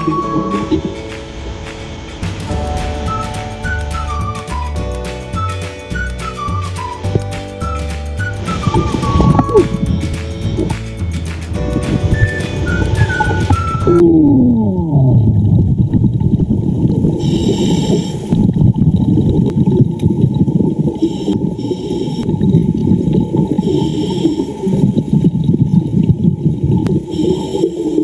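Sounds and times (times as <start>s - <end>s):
muffled underwater water rush: 0.0s - 28.0s.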